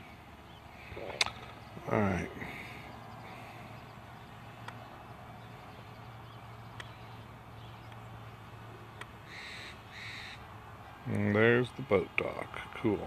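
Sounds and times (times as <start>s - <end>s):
low hum: 0.0s - 9.0s
faint clicks: 6.7s - 7.0s
bird call: 9.3s - 10.4s.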